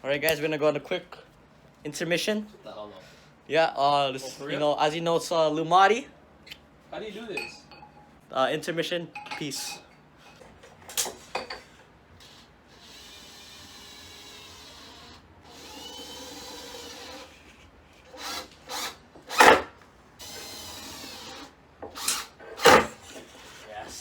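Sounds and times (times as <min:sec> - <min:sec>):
power drill running: 0:12.2 - 0:23.1
sharp knocks: 0:19.3 - 0:19.8, 0:22.6 - 0:23.0.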